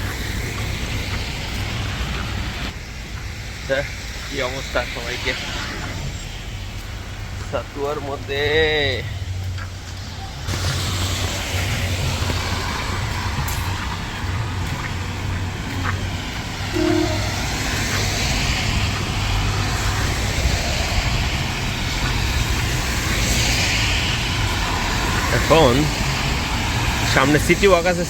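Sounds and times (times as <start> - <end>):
falling rain: 0.0 - 28.0
traffic engine rumble: 0.0 - 28.0
tyres hissing on wet road: 0.0 - 28.0.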